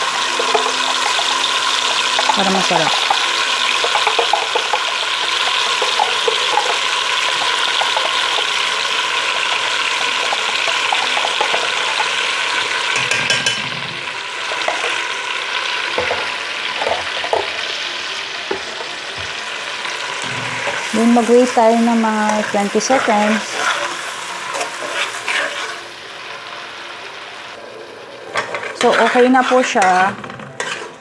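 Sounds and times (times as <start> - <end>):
garlic sizzling in hot oil: 0.0 - 31.0
spatula scraping a pan: 20.1 - 25.9, 28.3 - 31.0.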